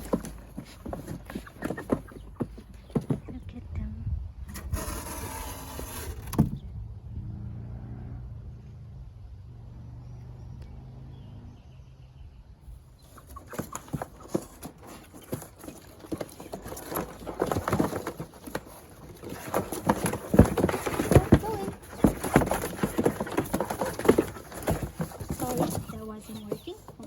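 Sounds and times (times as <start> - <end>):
low engine hum: 6.4 - 12.8.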